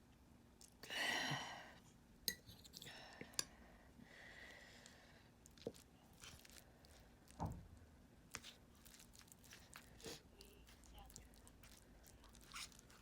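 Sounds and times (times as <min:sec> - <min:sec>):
person chewing: 0:04.8 - 0:07.4, 0:08.3 - 0:13.0.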